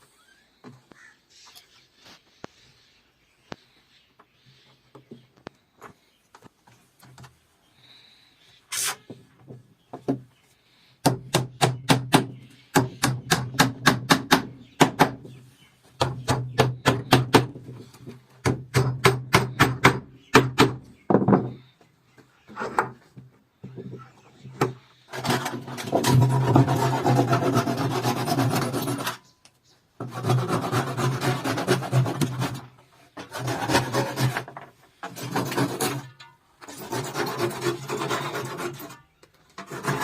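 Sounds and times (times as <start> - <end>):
hand tool working wood: 22.5 - 29.2, 30.0 - 40.0.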